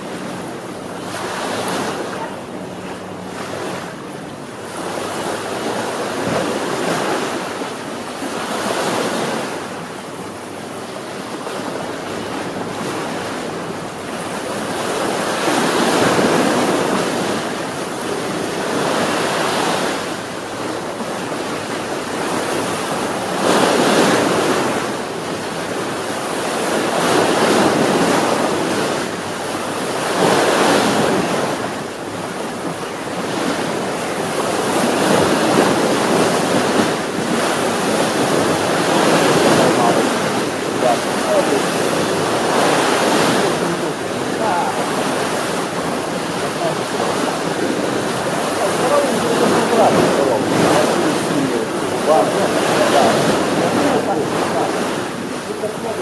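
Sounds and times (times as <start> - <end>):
sea waves breaking on shore: 0.0 - 56.0.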